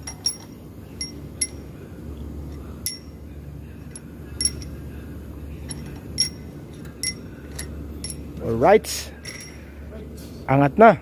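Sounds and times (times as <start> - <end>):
metal tools clinking: 0.0 - 1.6, 2.8 - 3.2, 3.9 - 4.8, 5.6 - 8.4, 9.2 - 9.6
low steady hum: 0.0 - 11.0.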